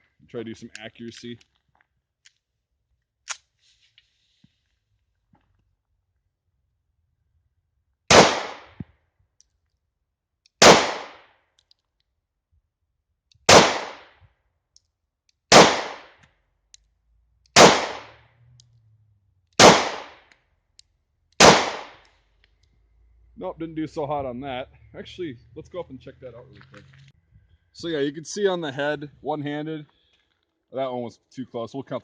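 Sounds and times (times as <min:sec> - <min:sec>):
pistol shots with echo: 0:08.1 - 0:08.8, 0:10.6 - 0:11.3, 0:13.5 - 0:14.1, 0:15.5 - 0:16.2, 0:17.6 - 0:18.2, 0:19.6 - 0:20.2, 0:21.4 - 0:22.0.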